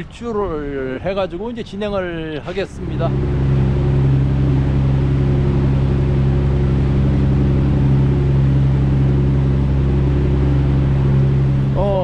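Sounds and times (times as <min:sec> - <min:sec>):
ship diesel engines droning: 0:02.4 - 0:12.0.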